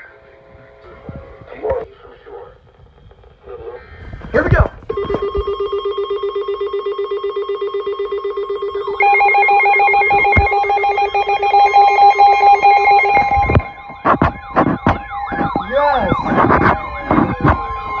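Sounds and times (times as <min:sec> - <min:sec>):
fast-pulsing low beep: 0:04.3 - 0:18.0
high steady alert tone: 0:04.4 - 0:18.0
warbling sweeping tones: 0:10.2 - 0:18.0.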